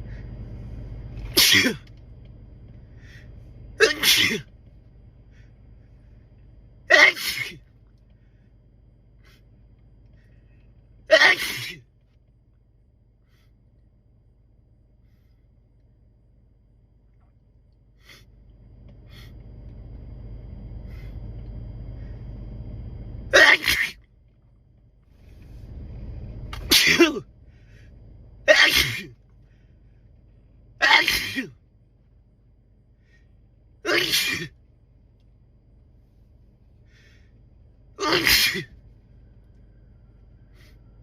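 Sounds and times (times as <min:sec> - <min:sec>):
man sneezing: 0:01.2 - 0:01.9, 0:03.8 - 0:04.5, 0:06.9 - 0:07.6, 0:11.1 - 0:11.8, 0:23.3 - 0:24.0, 0:26.6 - 0:27.2, 0:28.5 - 0:29.2, 0:30.8 - 0:31.6, 0:33.9 - 0:34.5, 0:38.0 - 0:38.7.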